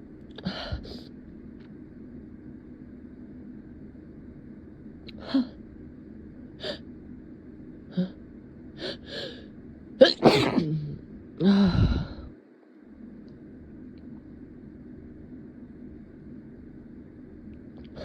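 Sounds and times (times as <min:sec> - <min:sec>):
person sneezing: 0:10.0 - 0:10.8
person gasping before sneeze: 0:10.1 - 0:10.8.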